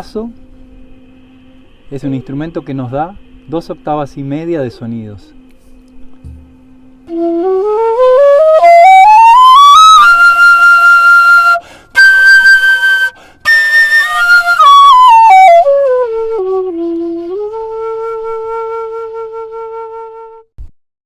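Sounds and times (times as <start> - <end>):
bamboo flute running up a scale: 7.0 - 20.5
short breaths: 11.6 - 12.0, 13.1 - 13.4.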